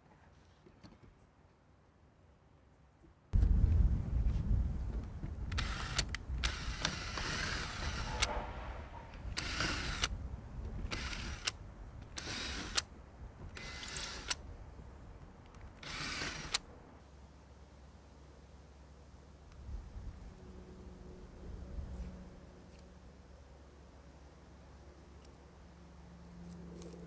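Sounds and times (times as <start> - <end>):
short bursts of tool noise: 5.5 - 10.1, 10.7 - 12.9, 13.5 - 14.4, 15.8 - 16.6
sharp tool click: 5.6 - 8.5.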